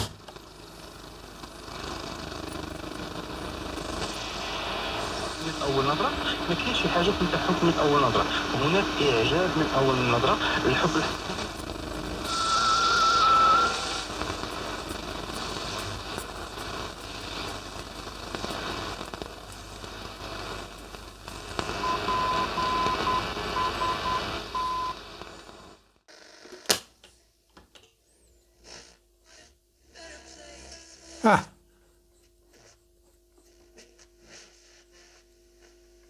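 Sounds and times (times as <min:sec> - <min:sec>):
radio static and crackle: 0:00.0 - 0:26.6
wavering radio whistle: 0:03.9 - 0:16.0, 0:21.4 - 0:25.0
short beeps: 0:21.8 - 0:25.0.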